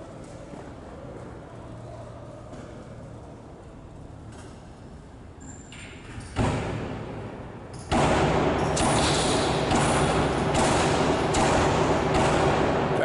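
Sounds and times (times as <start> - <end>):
loud steady rushing noise: 7.4 - 13.0.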